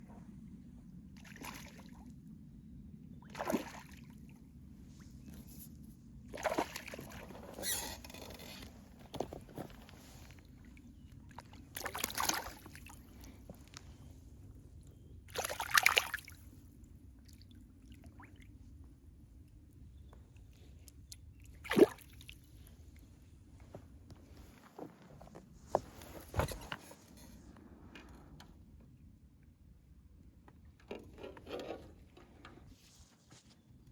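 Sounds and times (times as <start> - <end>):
low steady rumble: 0.0 - 6.4
water splashing and sloshing: 1.2 - 2.1, 3.2 - 14.2, 15.3 - 18.8, 20.4 - 27.4.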